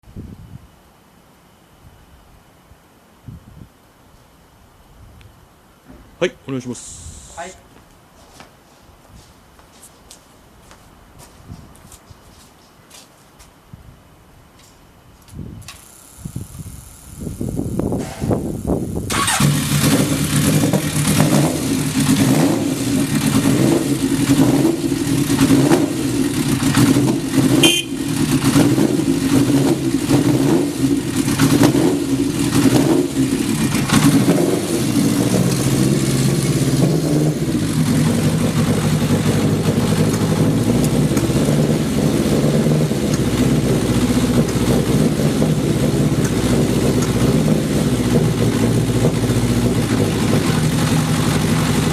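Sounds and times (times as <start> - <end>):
motorcycle engine starting: 15.7 - 51.9
motorcycle engine revving and idling: 16.1 - 51.9.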